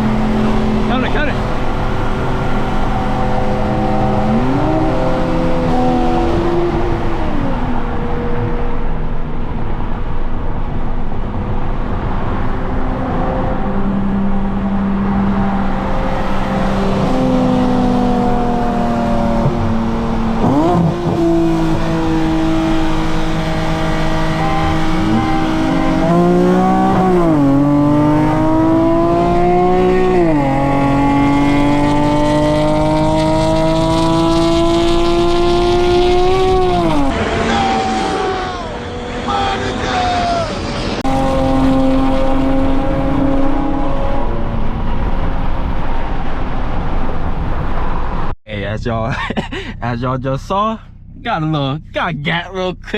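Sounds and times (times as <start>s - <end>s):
car engine revving through gears: 0.0s - 8.9s, 12.0s - 39.8s, 40.7s - 45.8s.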